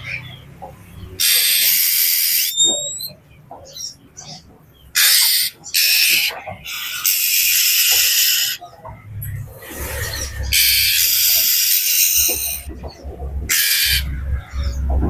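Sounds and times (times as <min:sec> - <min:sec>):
bird giving harsh rasping churrs: 0:01.0 - 0:08.6, 0:09.6 - 0:14.9.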